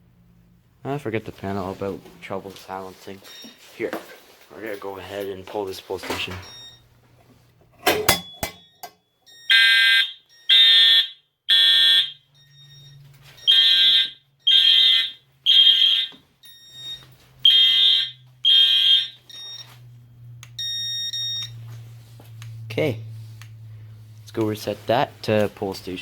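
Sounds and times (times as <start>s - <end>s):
pull station click: 7.7s - 9.0s
fire alarm horn blasts: 9.2s - 19.7s
quiet steady buzz: 16.4s - 26.0s.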